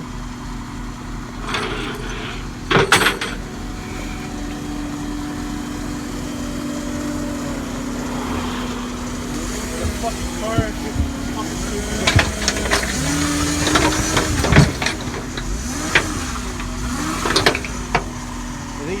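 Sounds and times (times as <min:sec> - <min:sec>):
vehicle engine idling: 0:00.0 - 0:19.0
clatter of sharp knocks: 0:01.3 - 0:03.5, 0:09.4 - 0:18.2.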